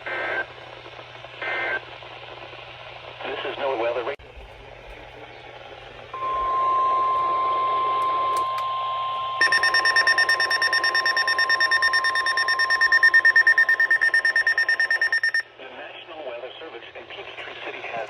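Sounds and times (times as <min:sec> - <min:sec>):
radio hiss: 0:00.0 - 0:04.2, 0:15.6 - 0:18.0
rapid alarm beeping: 0:06.2 - 0:15.4
steady high alarm tone: 0:06.2 - 0:15.4.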